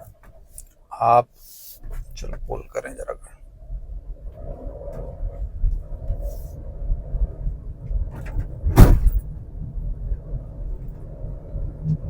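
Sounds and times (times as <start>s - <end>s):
car engine and road rumble: 0.0s - 12.0s
loud thump: 8.2s - 9.3s.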